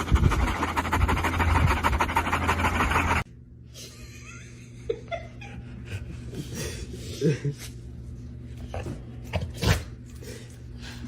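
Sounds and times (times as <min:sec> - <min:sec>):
dog panting: 0:00.0 - 0:03.2.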